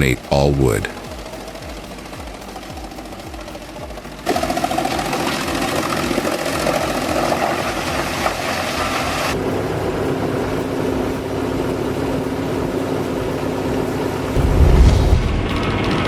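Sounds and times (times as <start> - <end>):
wood chipper chipping: 0.9 - 9.4
machine engine running steadily: 0.9 - 16.0.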